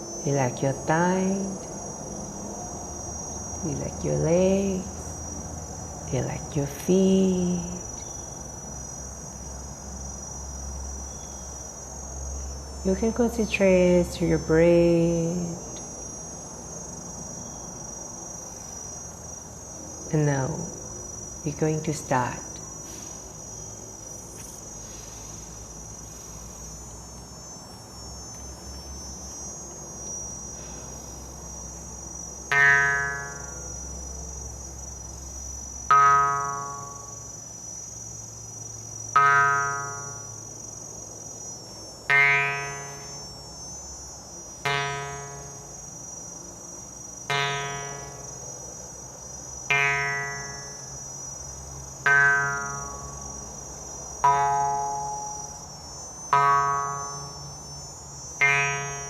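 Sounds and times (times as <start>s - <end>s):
crickets trilling: 0.0s - 59.0s
ringing instrument note: 32.5s - 33.8s, 35.9s - 37.3s, 39.1s - 40.4s, 42.1s - 43.3s, 44.6s - 45.7s, 47.3s - 48.3s, 49.7s - 51.0s, 52.0s - 59.0s.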